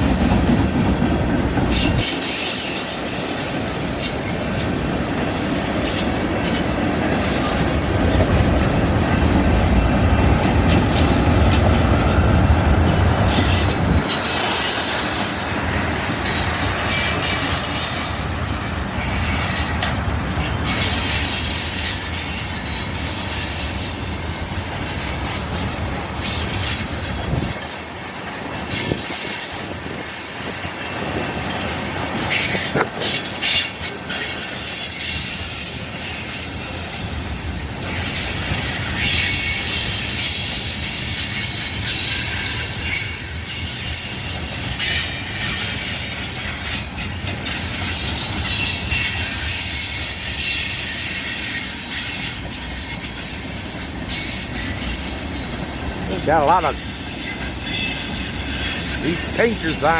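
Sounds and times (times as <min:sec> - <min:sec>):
freight train rumbling past: 0:00.0 - 0:59.9
high wheel squeal: 0:37.8 - 0:59.9.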